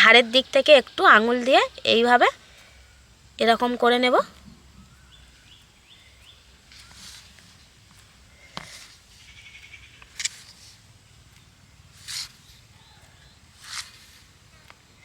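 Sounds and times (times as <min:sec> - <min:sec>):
faint bird chirps: 0:04.2 - 0:15.0
sharp click: 0:10.0 - 0:10.6.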